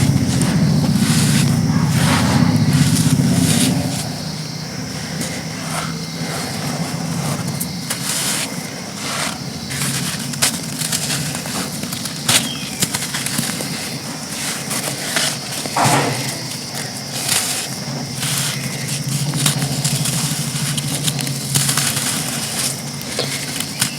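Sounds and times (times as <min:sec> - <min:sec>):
packed sand crunching: 0:00.0 - 0:23.9
steady low hum: 0:00.0 - 0:23.9.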